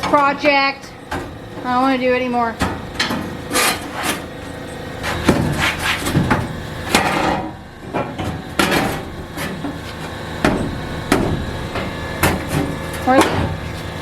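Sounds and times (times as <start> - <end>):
metal scraping: 0.0 - 14.0
sheet metal knocking and clanking: 5.2 - 13.6.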